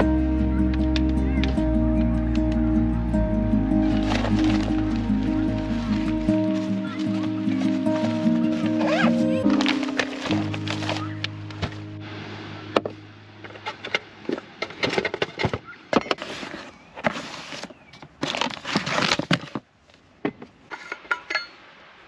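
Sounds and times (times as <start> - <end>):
objects rustling and knocking: 3.8 - 11.8, 12.8 - 21.5.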